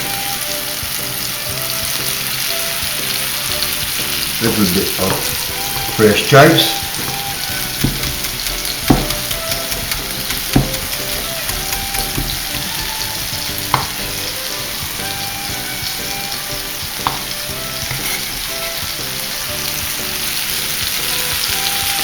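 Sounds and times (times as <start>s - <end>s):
food sizzling in oil: 0.0s - 22.0s
sharp knocks: 7.0s - 14.4s, 17.0s - 18.1s.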